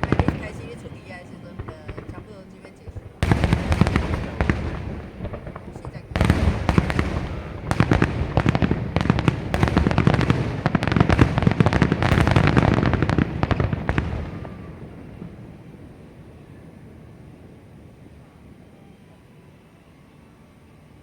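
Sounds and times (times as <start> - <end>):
fireworks bangs and crackles: 0.0 - 19.7
fireworks rumble: 0.0 - 21.0.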